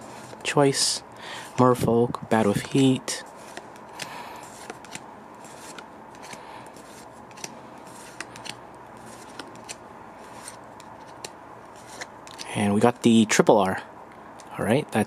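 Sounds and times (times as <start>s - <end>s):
cards being flipped through: 0.0s - 0.5s, 2.6s - 13.1s
card edges clicking: 3.4s - 12.5s.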